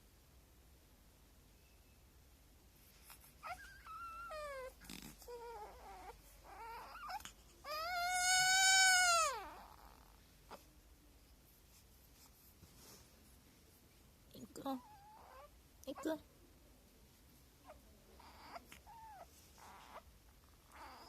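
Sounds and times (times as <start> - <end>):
newborn baby crying: 3.4 - 10.6, 17.6 - 21.0.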